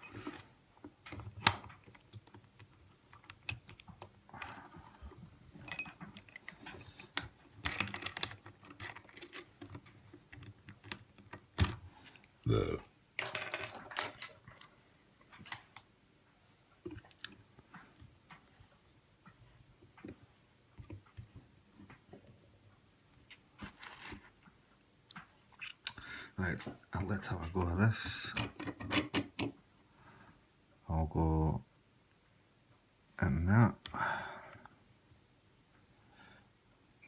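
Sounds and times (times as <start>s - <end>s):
padlock and key clicking: 7.7s - 9.4s.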